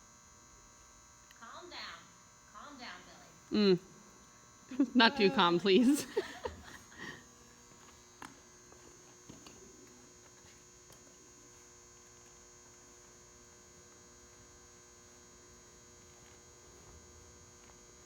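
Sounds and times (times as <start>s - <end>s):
faint electrical hum: 0.0s - 18.0s.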